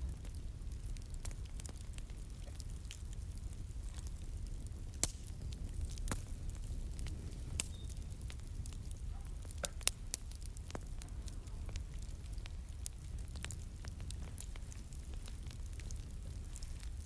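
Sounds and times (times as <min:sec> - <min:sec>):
fire crackling and popping: 0:00.0 - 0:17.0.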